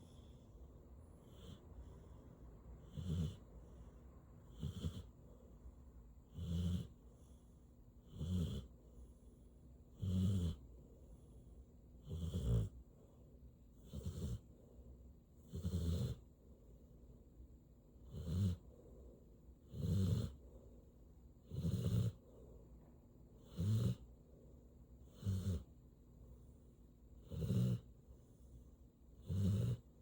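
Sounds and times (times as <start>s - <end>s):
dog snoring: 1.2s - 2.2s, 2.8s - 5.5s, 6.2s - 7.4s, 8.0s - 9.2s, 9.9s - 11.4s, 12.0s - 13.2s, 13.8s - 14.7s, 15.4s - 16.3s, 18.0s - 20.7s, 21.4s - 22.6s, 23.4s - 24.2s, 25.0s - 25.7s, 27.2s - 28.0s, 29.2s - 30.0s.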